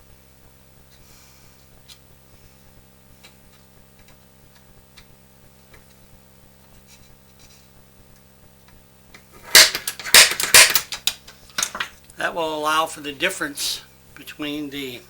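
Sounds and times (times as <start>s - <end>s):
hand tools clattering on bench: 9.4s - 11.9s.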